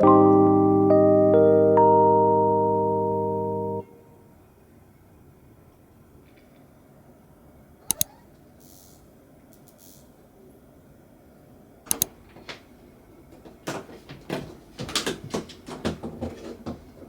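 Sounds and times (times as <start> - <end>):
sharp double click: 7.9 - 8.9, 11.9 - 12.1
objects knocking and rustling: 12.1 - 17.0.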